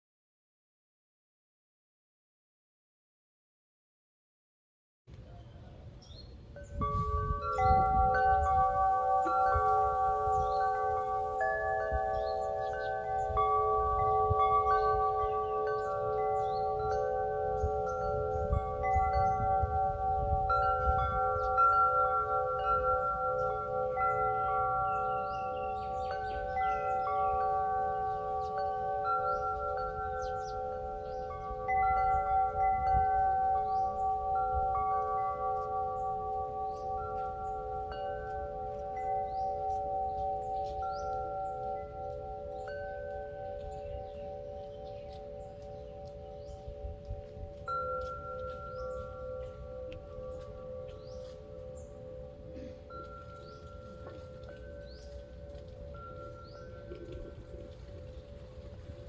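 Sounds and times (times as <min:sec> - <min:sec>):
wind chime ringing: 0:06.1 - 0:59.0.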